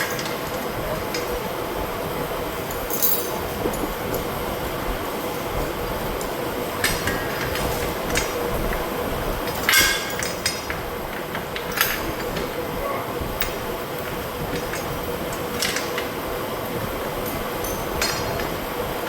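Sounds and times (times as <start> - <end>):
metal clinks: 2.7 - 4.2, 9.4 - 12.4, 17.2 - 18.6.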